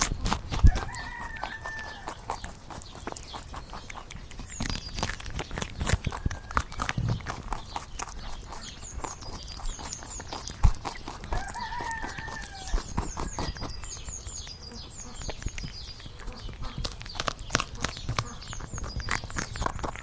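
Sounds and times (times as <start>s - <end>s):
rooster crowing: 0.7s - 2.2s, 11.3s - 13.4s.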